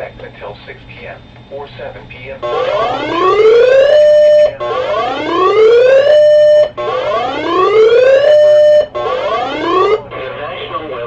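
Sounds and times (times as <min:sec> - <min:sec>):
electronic whoop alert siren: 0:02.4 - 0:10.1.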